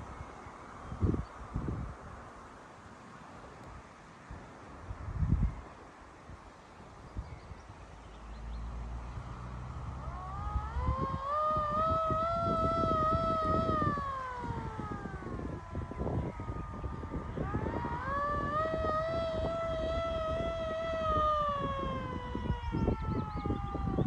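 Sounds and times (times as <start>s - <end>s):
hand-cranked air raid siren wailing: 9.9s - 24.0s.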